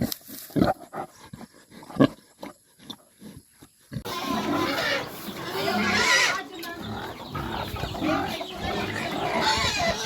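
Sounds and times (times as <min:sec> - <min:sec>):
pig grunting: 0:03.9 - 0:10.0.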